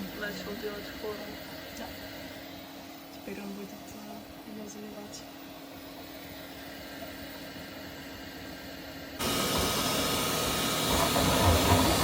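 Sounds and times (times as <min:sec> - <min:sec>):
three d printer humming: 0:00.0 - 0:12.0
loud rushing hiss: 0:05.4 - 0:12.0.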